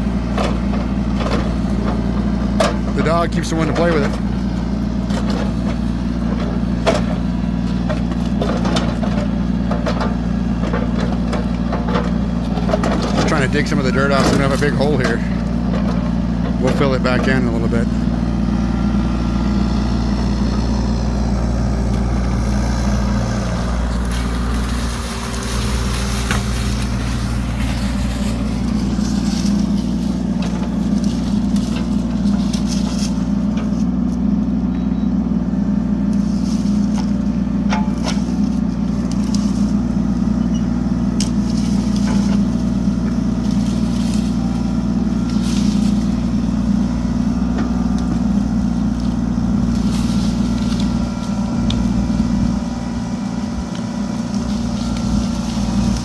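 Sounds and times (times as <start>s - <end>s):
bucket knocking and scraping dirt: 0.0s - 34.0s
excavator engine running: 0.0s - 56.0s.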